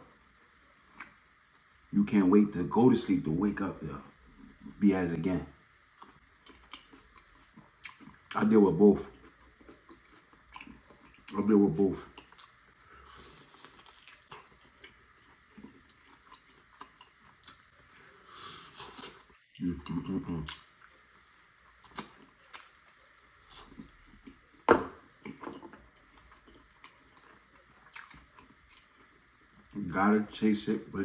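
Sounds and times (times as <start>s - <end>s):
wet chewing mouth sounds: 12.1s - 24.4s, 25.2s - 29.1s.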